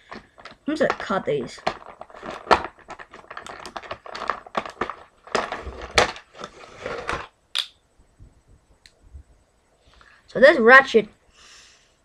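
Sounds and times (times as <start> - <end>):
plastic packaging rustling: 0.0 - 7.3.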